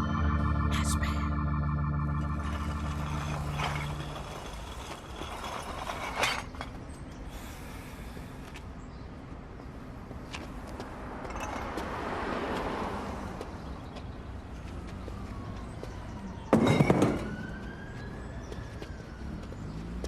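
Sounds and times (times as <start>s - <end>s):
faint siren wailing: 0.0s - 4.6s, 12.4s - 20.0s.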